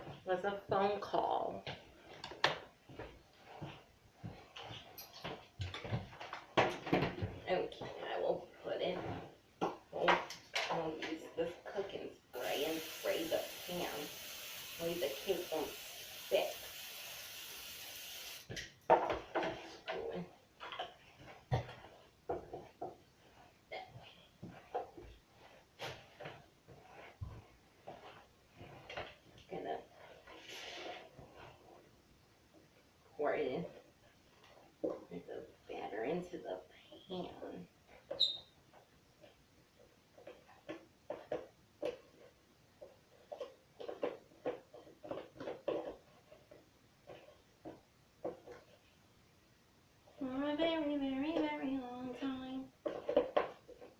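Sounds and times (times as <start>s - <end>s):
batter scraped from mixing bowl: 29.8s - 31.7s.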